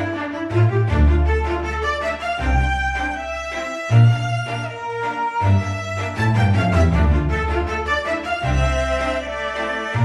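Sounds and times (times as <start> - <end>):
cello: 0.0 - 10.0
violin: 0.0 - 10.0
low bass line: 5.4 - 7.8.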